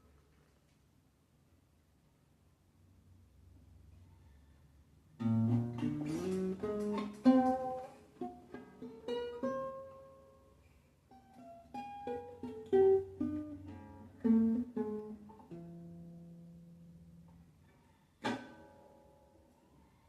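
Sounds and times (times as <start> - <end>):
plucked string instrument notes: 5.2 - 17.6, 18.2 - 19.4.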